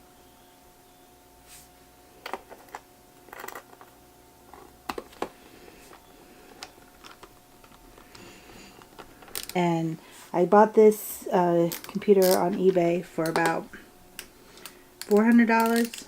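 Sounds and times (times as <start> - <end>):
faint steady hum: 0.0 - 16.0
screwdriver and screw clicks: 15.0 - 16.0.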